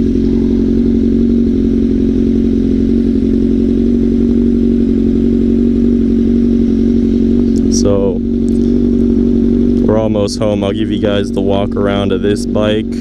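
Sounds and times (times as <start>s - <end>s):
motorcycle engine cruising: 0.0s - 13.0s.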